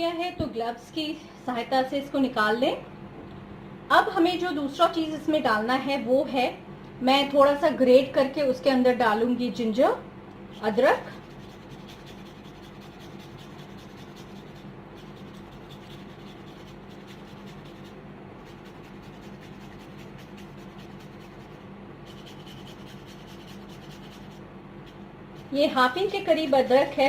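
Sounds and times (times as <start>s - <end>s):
faint low hum: 0.0s - 27.0s
ginger grated on hand grater: 10.5s - 26.9s.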